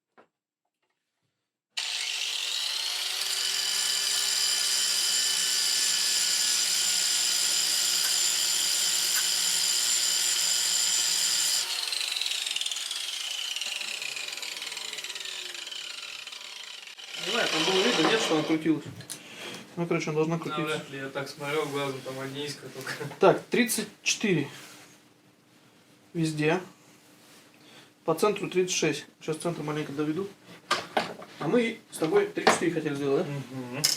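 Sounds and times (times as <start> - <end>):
angle grinder grinding steel: 1.8 - 18.7.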